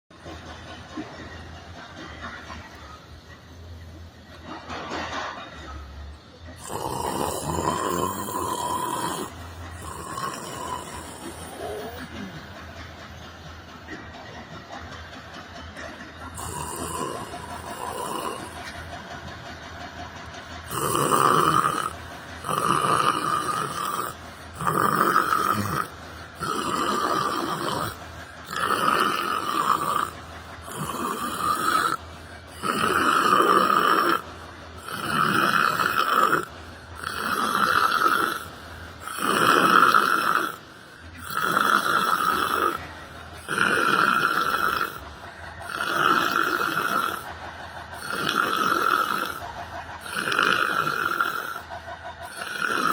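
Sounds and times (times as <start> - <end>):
person snoring: 6.6 - 12.5, 16.2 - 18.9, 20.6 - 45.0, 45.6 - 47.3, 48.0 - 49.4, 50.0 - 51.6, 52.2 - 52.9.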